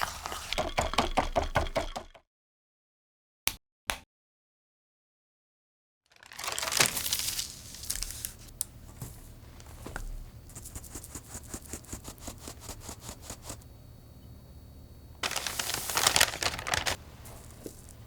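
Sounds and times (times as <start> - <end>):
packaging crinkling and tearing: 6.2 - 8.6, 15.2 - 18.0.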